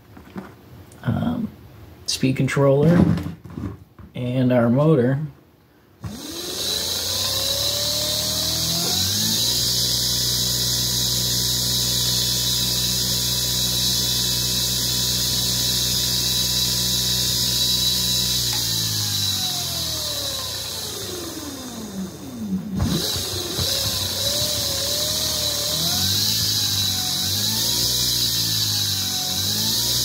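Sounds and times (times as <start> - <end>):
electric motor whine: 6.0 - 30.0.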